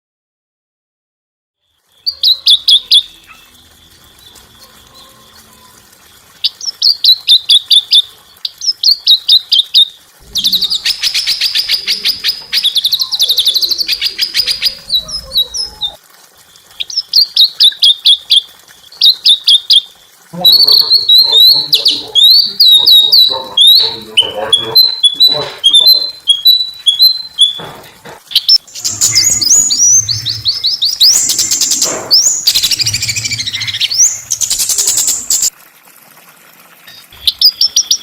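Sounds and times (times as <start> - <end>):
bird trill: 2.0 - 16.0, 20.5 - 27.6, 28.3 - 35.5
songbird singing: 2.0 - 16.0, 20.4 - 35.5.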